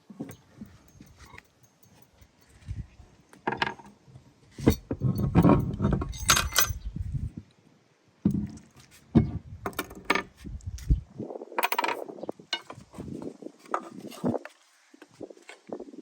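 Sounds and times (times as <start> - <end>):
low rumbling: 4.8 - 7.4.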